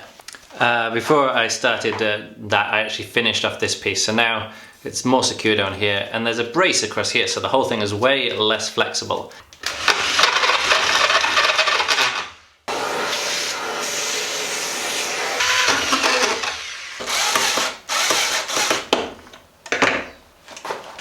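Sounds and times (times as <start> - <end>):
power tool running in bursts: 9.7 - 18.8.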